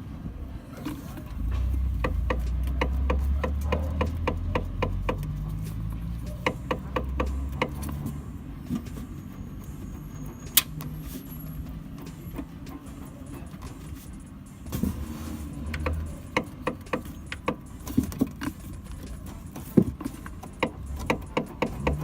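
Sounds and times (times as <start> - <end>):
low road rumble: 0.0 - 22.0
suspension knocking clicks: 1.3 - 8.2, 15.6 - 22.0.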